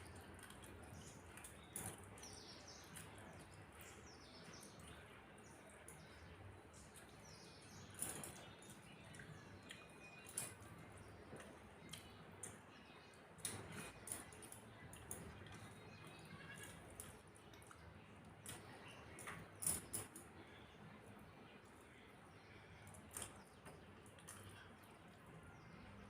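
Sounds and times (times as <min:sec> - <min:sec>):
faint high bird chirps: 0:01.0 - 0:11.0.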